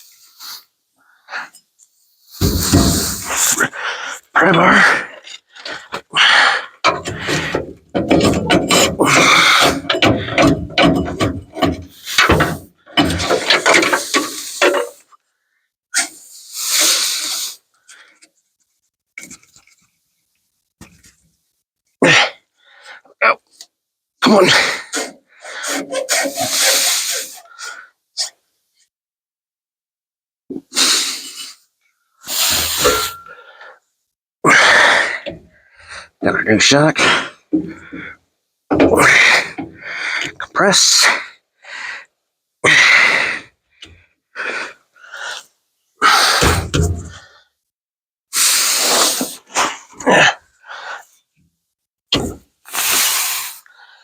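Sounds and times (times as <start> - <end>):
man straining and huffing: 0.1 - 15.2, 22.0 - 28.4, 30.5 - 33.8, 34.4 - 47.6, 48.3 - 51.2
forceful breathy exhalations: 2.2 - 18.2, 24.4 - 28.4, 30.6 - 33.8, 41.3 - 47.6, 48.3 - 51.2, 52.6 - 54.0.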